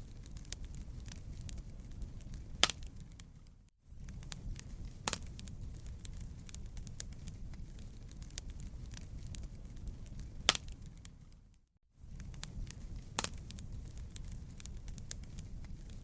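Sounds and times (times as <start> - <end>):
sharp pops of fire: 0.0 - 11.4, 12.0 - 16.0
wood fire crackling: 0.0 - 16.0.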